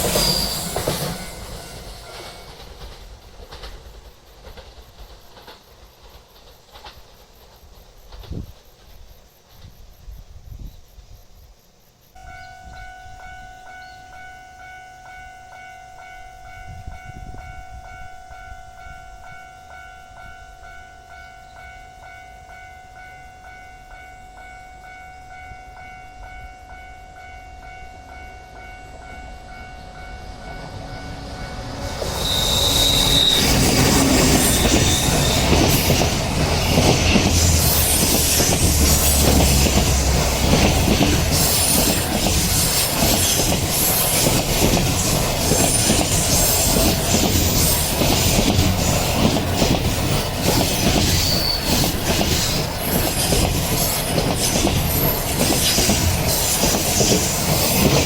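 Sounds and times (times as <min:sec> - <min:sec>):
high wheel squeal: 0:00.0 - 0:02.8, 0:29.7 - 0:58.0
level-crossing warning bell: 0:00.0 - 0:02.9, 0:12.2 - 0:58.0
deep train rumble: 0:00.0 - 0:10.3, 0:12.2 - 0:58.0
train passing on rails: 0:00.0 - 0:58.0.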